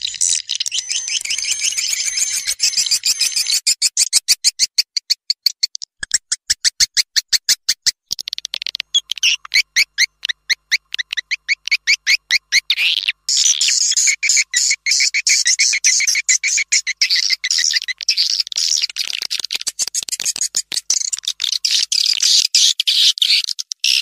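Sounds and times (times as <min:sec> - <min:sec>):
swiftlet chirps played back: 0:00.0 - 0:03.7.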